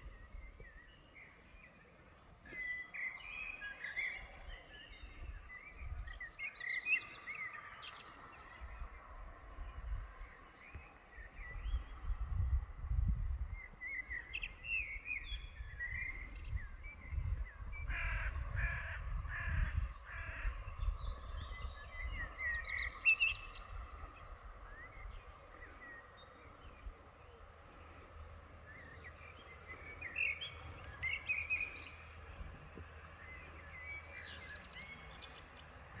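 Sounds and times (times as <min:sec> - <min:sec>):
birds chirping: 0:13.5 - 0:36.0
harsh loud bird calls: 0:17.2 - 0:21.2.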